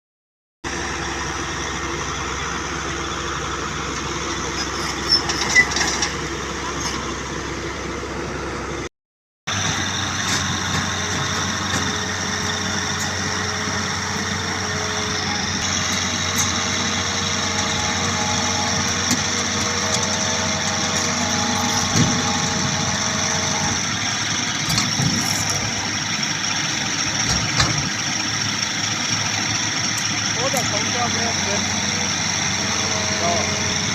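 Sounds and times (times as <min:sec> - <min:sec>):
diesel engine running: 0:00.6 - 0:08.9, 0:09.5 - 0:33.9
constant whine: 0:09.5 - 0:33.9.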